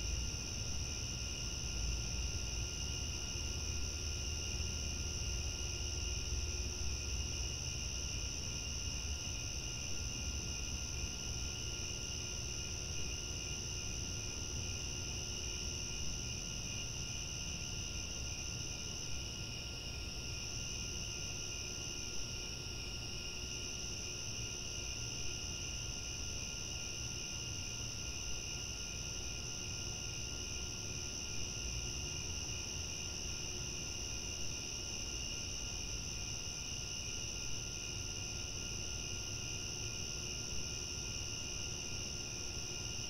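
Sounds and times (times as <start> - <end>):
crickets chirping: 0.0 - 43.0.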